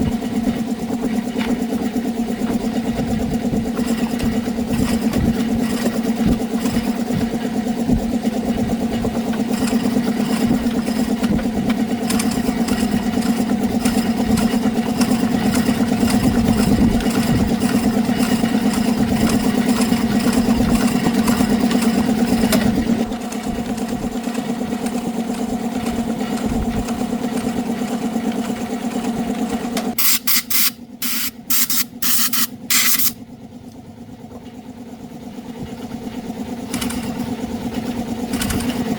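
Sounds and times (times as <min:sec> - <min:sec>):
motorbike engine idling: 0:00.0 - 0:38.9
short hissing bursts: 0:30.0 - 0:33.2.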